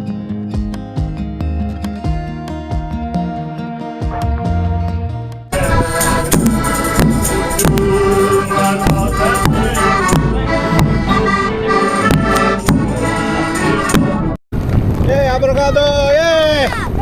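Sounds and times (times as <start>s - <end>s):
lively accordion music: 2.0s - 14.4s
percussive beat: 4.0s - 14.4s.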